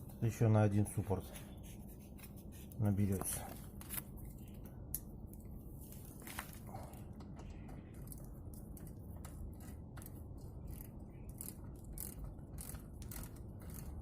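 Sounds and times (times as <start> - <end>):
low steady hum: 0.0 - 14.0
metallic clicks and scrapes: 7.7 - 14.0.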